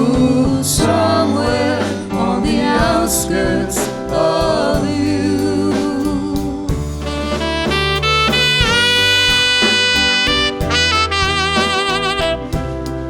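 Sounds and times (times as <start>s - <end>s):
bass and drums: 0.0s - 13.0s
saxophone solo: 7.0s - 13.0s.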